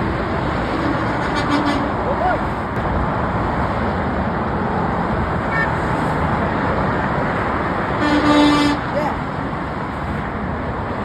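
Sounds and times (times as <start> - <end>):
freeway traffic noise: 0.0 - 11.0
truck horn blast: 0.7 - 2.1, 5.5 - 5.9, 8.0 - 9.0.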